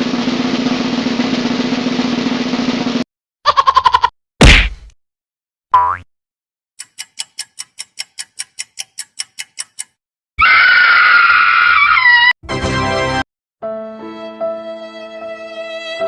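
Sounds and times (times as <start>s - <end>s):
quick clock-like ticks: 6.8s - 10.0s
loud sustained scream: 10.4s - 12.4s.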